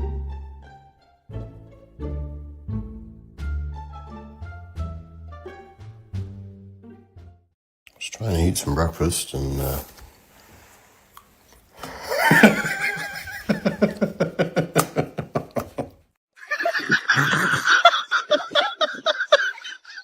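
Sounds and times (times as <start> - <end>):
people laughing: 11.8 - 20.0
higher-pitched laughter: 12.0 - 20.0.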